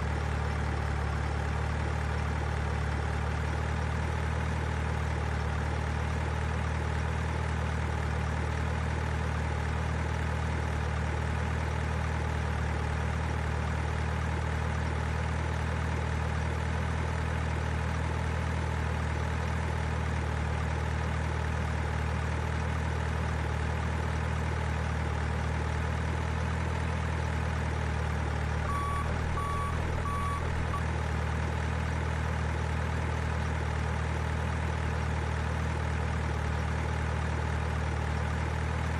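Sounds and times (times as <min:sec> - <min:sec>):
diesel truck engine idling: 0:28.7 - 0:30.8
reversing beeps: 0:28.7 - 0:30.8.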